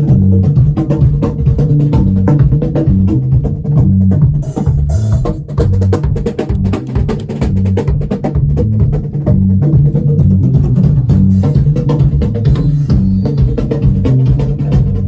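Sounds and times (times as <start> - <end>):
drum kit playing: 0.0 - 15.0
low bass line: 0.0 - 15.0
cymbal crash: 11.3 - 11.8.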